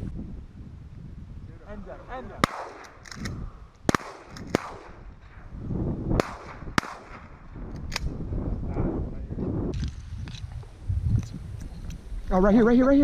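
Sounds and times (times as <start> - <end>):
wind buffeting microphone: 0.0 - 13.0
shotgun shots: 2.4 - 5.5, 6.1 - 8.1.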